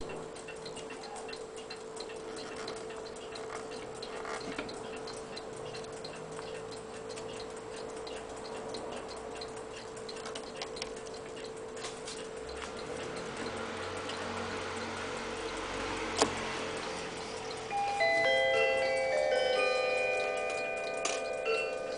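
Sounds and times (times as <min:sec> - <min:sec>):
faint irregular ticks and clicks: 0:00.0 - 0:21.9
steady hum: 0:00.0 - 0:21.9.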